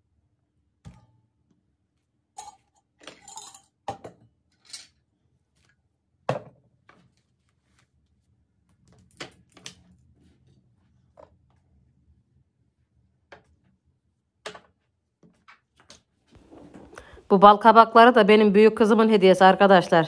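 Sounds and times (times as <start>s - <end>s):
cups and dishes clinking: 2.4s - 4.2s.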